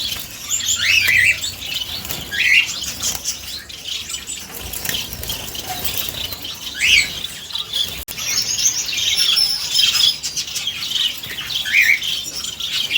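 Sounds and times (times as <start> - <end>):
wings fluttering: 0.0 - 8.0
finches chirping: 0.0 - 12.9.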